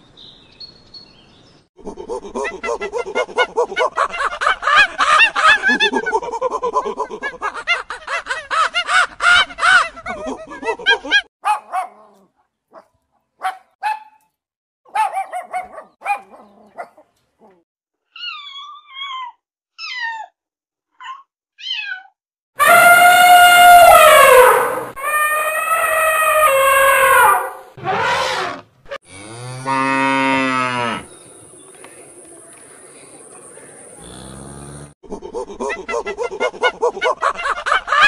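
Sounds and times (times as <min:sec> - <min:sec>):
chorus of animal calls: 0:22.6 - 0:28.6, 0:29.2 - 0:34.9
falling slurred animal calls: 0:22.6 - 0:28.6.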